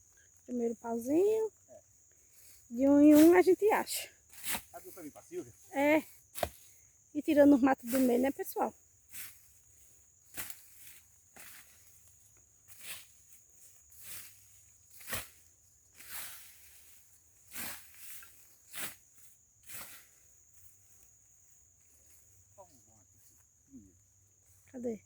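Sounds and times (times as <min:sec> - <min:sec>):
footsteps through dry scrub: 0:09.1 - 0:23.6.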